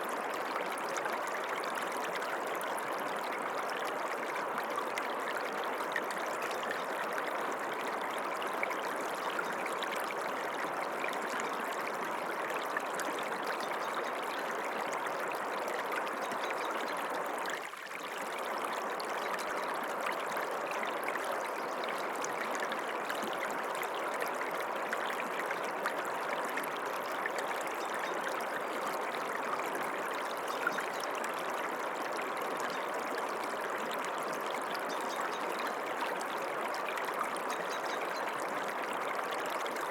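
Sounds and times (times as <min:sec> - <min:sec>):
stream water running: 0:00.0 - 0:39.9.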